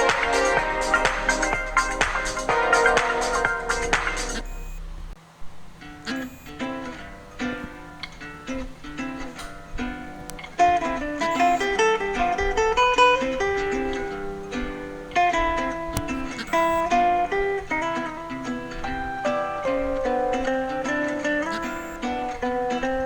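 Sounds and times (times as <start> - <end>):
phone ringtone melody: 0.0 - 4.8, 11.3 - 12.0, 16.5 - 16.9, 21.6 - 22.3.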